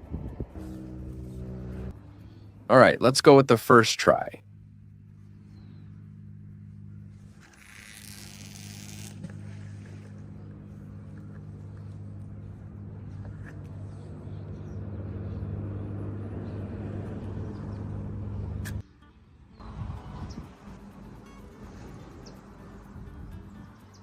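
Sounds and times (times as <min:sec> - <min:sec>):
machine humming: 0:00.0 - 0:02.7.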